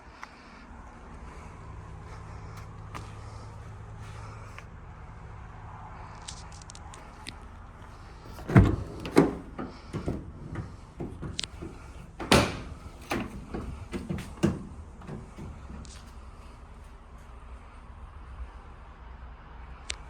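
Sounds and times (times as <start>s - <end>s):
van doors clunking: 7.0s - 16.9s.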